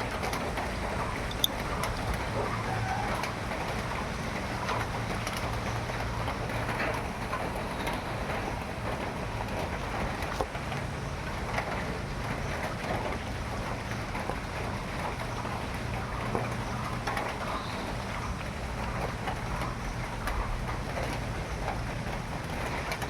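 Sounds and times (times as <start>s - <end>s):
steady rain falling: 0.0s - 23.0s
drop ticks: 1.3s - 2.0s.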